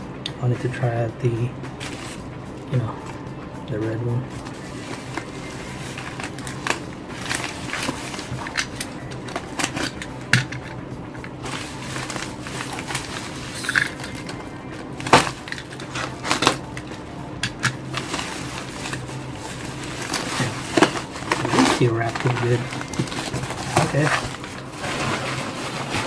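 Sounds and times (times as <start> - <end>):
packaging crinkling: 4.4 - 10.4, 11.4 - 26.0.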